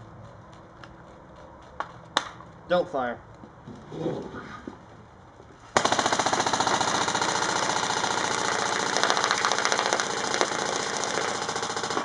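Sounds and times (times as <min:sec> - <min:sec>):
airsoft gun full-auto firing: 0:05.8 - 0:12.0.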